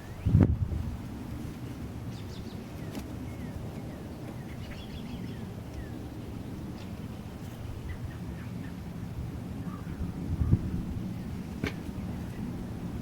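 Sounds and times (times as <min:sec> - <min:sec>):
low outdoor rumble: 0:00.0 - 0:13.0
birds chirping: 0:01.6 - 0:08.9.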